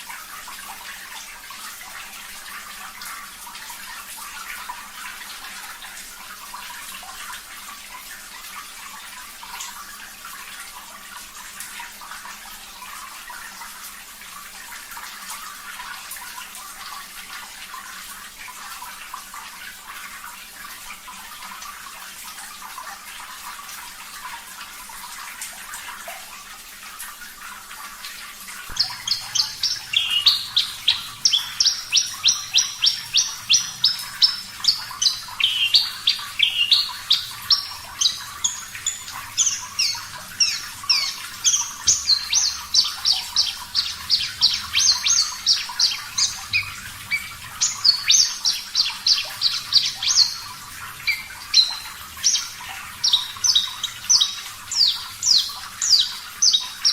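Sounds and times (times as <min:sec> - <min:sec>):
running water: 0:00.0 - 0:56.9
bird singing sharp high notes: 0:28.7 - 0:50.4.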